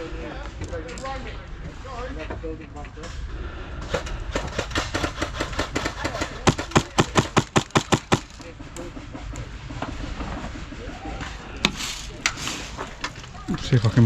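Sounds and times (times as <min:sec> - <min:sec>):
airsoft rifle shots: 0:04.3 - 0:08.4.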